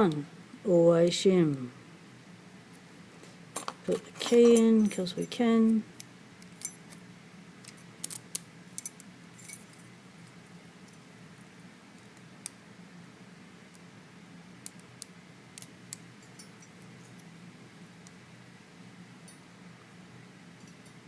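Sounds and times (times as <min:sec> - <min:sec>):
faint steady hum: 0:00.0 - 0:21.0
key and padlock clinking: 0:03.6 - 0:05.2, 0:06.6 - 0:07.0, 0:08.8 - 0:09.8.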